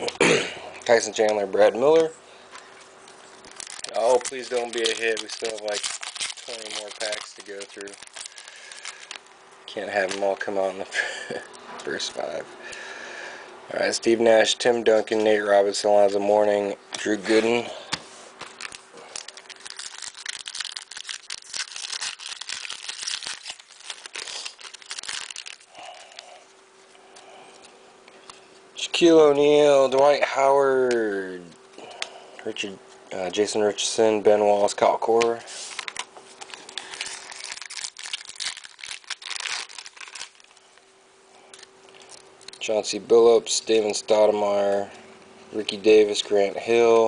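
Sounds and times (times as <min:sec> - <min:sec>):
faint steady hum: 0:00.0 - 0:47.0
wrapper tearing and crinkling: 0:03.3 - 0:10.4, 0:18.4 - 0:26.3, 0:35.6 - 0:40.7.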